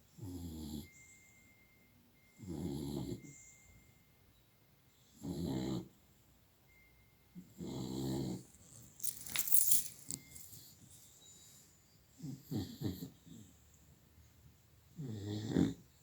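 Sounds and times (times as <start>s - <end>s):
dog snoring: 0.2s - 1.0s, 2.3s - 3.4s, 5.1s - 6.0s, 7.4s - 8.9s, 12.2s - 13.6s, 14.9s - 15.9s.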